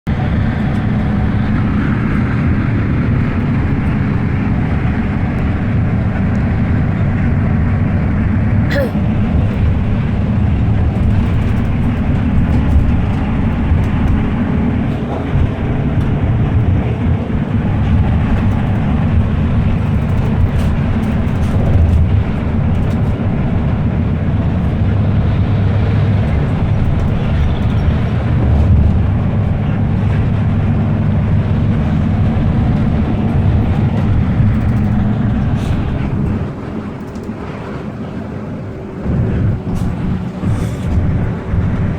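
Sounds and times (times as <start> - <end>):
car road and engine rumble: 0.1 - 41.9
passenger snoring: 8.4 - 10.0, 28.8 - 41.9.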